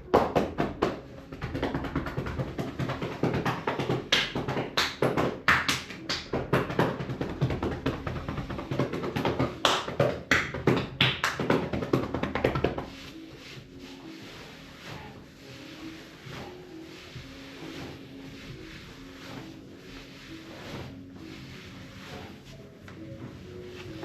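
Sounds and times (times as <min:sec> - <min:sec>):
hands tapping and slapping on body: 0:00.0 - 0:13.2.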